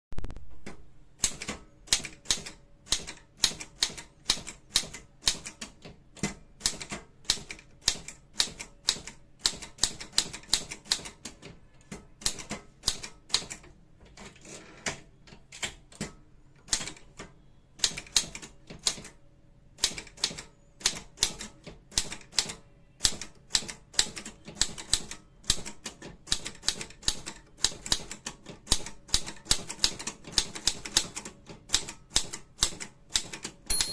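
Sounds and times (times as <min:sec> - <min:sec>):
typewriter key strikes: 0:31.8 - 0:33.9.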